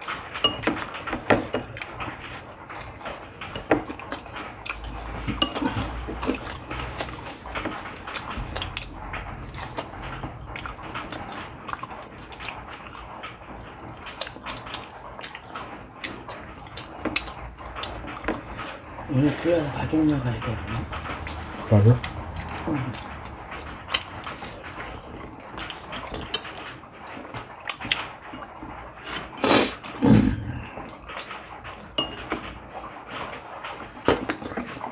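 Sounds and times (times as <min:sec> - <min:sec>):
chewing and mouth sounds: 0:00.0 - 0:34.9
chopsticks and dishes clicking: 0:00.4 - 0:13.0, 0:31.0 - 0:32.6.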